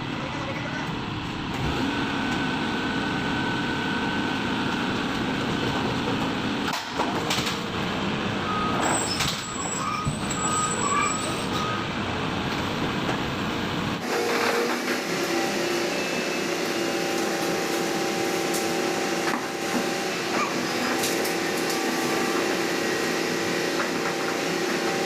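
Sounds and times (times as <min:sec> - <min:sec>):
excavator diesel engine and hydraulics: 0:00.0 - 0:25.0
short high-pitched squeals: 0:08.5 - 0:11.8.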